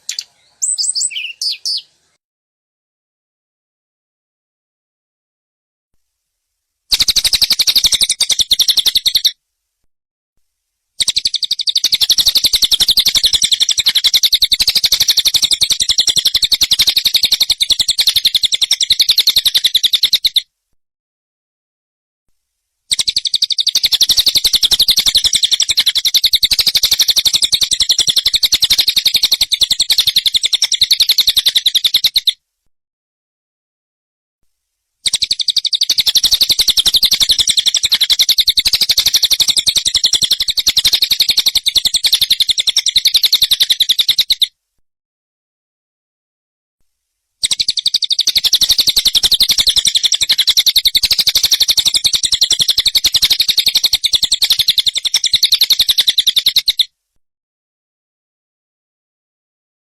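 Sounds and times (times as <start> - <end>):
bird rattling trill: 6.9 - 9.4, 11.0 - 20.4, 22.9 - 32.4, 35.0 - 44.4, 47.4 - 56.9.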